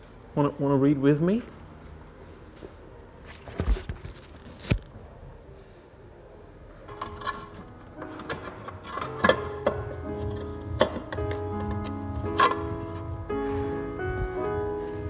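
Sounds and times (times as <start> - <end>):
music with plucked strings: 6.9 - 15.0.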